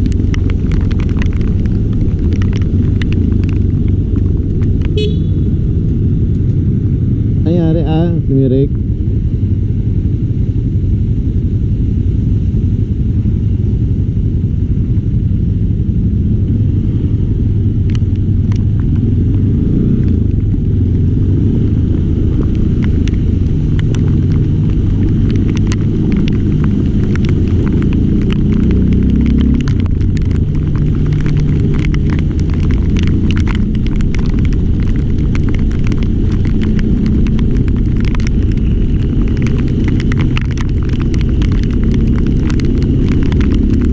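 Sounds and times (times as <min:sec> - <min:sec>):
raindrops tapping microphone: 0:00.0 - 0:06.6, 0:16.6 - 0:43.9
vehicle rumble: 0:00.0 - 0:43.9
wind buffeting microphone: 0:15.2 - 0:43.9.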